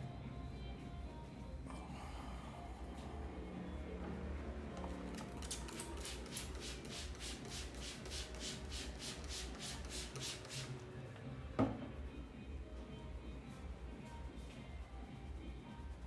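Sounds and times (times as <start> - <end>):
hands rubbing in massage: 5.2 - 10.8.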